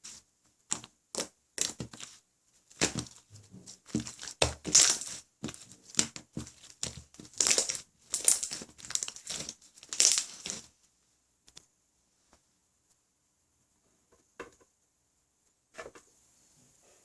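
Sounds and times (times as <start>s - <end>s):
slime squishing by hand: 0.0s - 10.8s.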